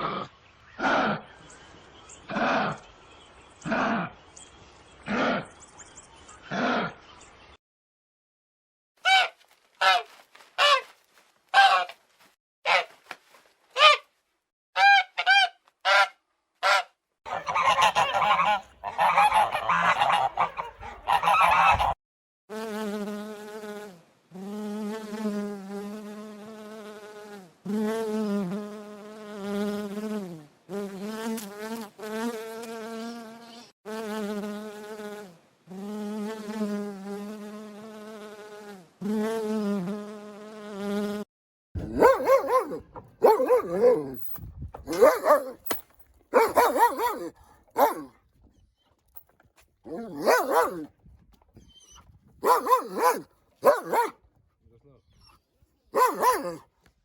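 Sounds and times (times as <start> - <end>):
goose honking: 9.1 - 10.9, 14.8 - 22.0.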